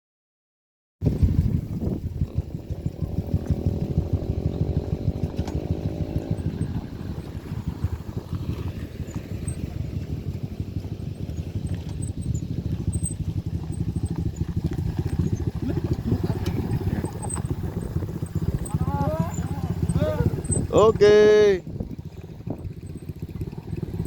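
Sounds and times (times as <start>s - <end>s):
motorcycle engine under load: 1.0s - 24.0s.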